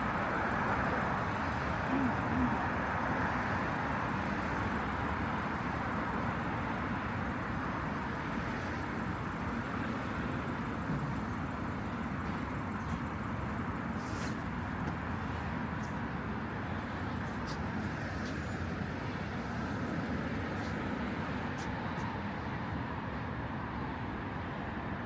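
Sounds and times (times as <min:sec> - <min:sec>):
road traffic passing cars: 0:00.0 - 0:25.0.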